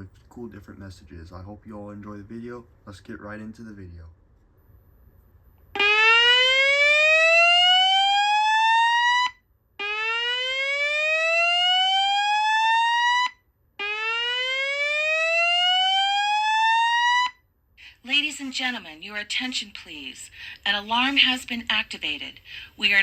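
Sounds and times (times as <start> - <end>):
fire alarm whoop tone: 5.8 - 17.4.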